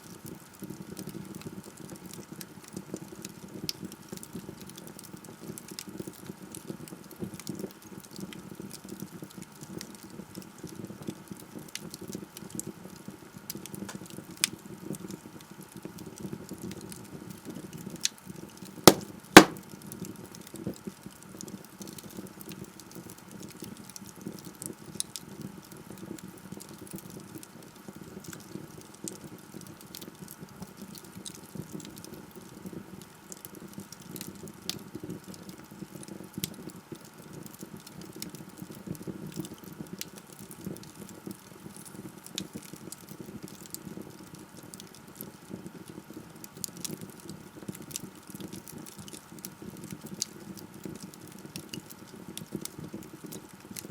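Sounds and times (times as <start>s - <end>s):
fire crackles: 0.1s - 10.8s, 11.6s - 15.4s, 17.4s - 19.6s, 20.5s - 53.9s
wood fire burning: 0.2s - 6.2s, 18.9s - 19.6s, 26.8s - 53.9s
loud sharp pops: 18.9s - 19.6s.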